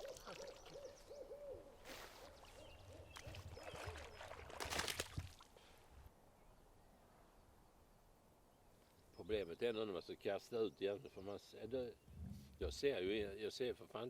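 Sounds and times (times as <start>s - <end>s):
faint hooting animal calls: 0.0s - 2.7s.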